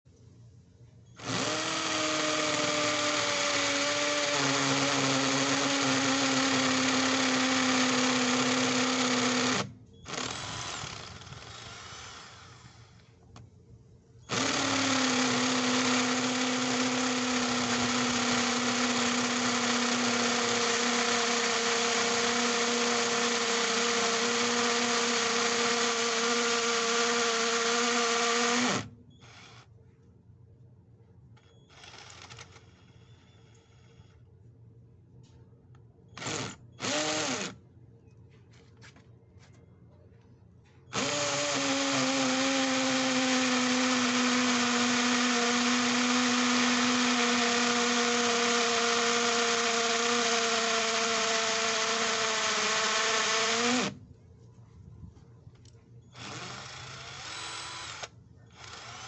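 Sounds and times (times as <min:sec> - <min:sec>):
hammer drill motor running: 0:01.2 - 0:13.1, 0:14.3 - 0:29.7, 0:31.7 - 0:34.2, 0:36.2 - 0:37.6, 0:40.9 - 0:54.0, 0:56.1 - 0:59.0.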